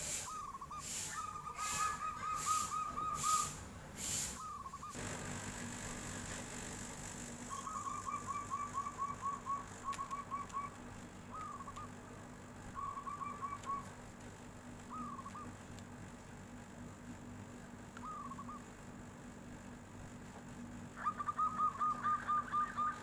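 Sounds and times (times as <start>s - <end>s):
dove cooing: 0.1s - 3.6s, 7.5s - 14.0s, 14.8s - 15.6s, 18.0s - 18.7s, 21.0s - 23.0s.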